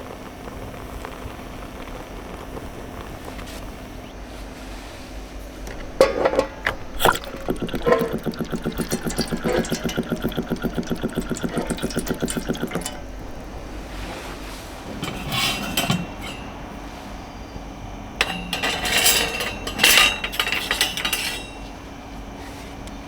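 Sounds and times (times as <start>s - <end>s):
utensils clicking and knocking: 6.9s - 13.2s
rhythmic utensil scraping: 6.9s - 13.5s.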